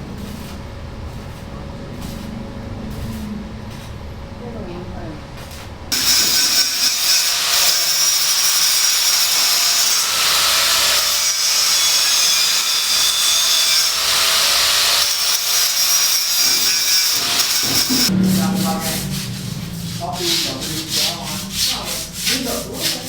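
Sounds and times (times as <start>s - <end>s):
power tool grinding: 5.9s - 23.0s.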